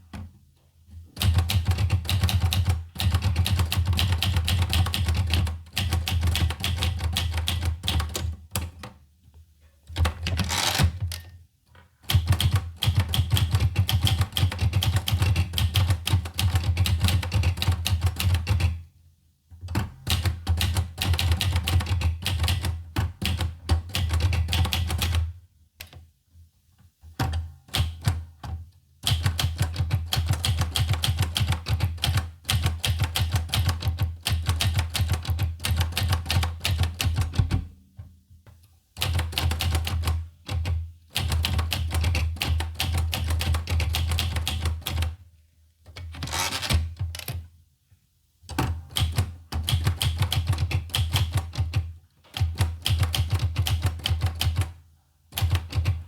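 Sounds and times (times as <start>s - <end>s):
manual typewriter typing: 10.0s - 11.2s, 12.1s - 18.8s, 29.0s - 37.6s, 39.0s - 45.1s, 48.6s - 54.7s, 55.3s - 56.0s.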